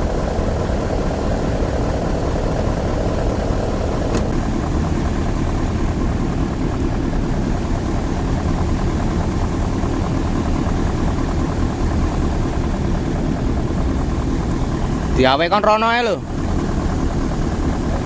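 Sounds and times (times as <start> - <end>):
diesel engine running: 0.0 - 18.0.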